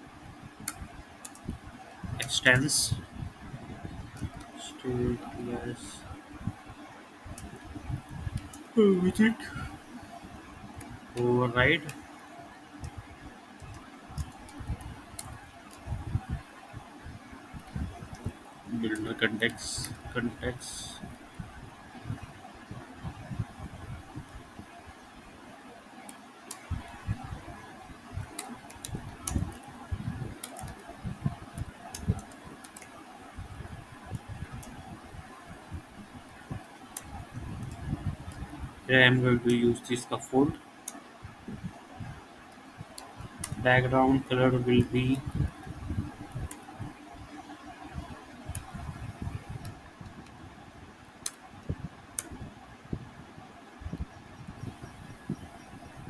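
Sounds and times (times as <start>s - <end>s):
background hiss: 0.0s - 56.0s
keyboard typing: 7.3s - 13.0s, 13.6s - 16.3s, 28.1s - 34.9s.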